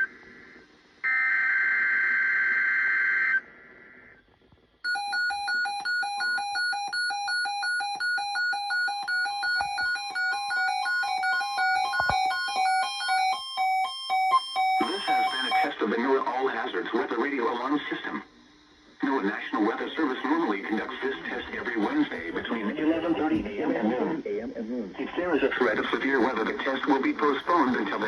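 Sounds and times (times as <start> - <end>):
weather radio alarm beeps: 4.9 - 15.8.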